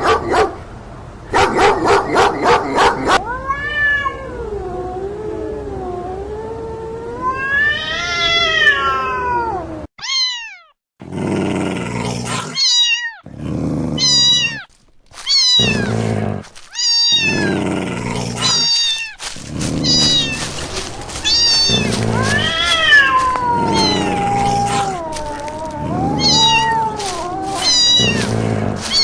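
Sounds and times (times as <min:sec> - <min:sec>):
cat growling: 0:00.0 - 0:00.7, 0:11.0 - 0:29.0
cats yowling and screeching: 0:12.3 - 0:13.2, 0:13.9 - 0:29.0.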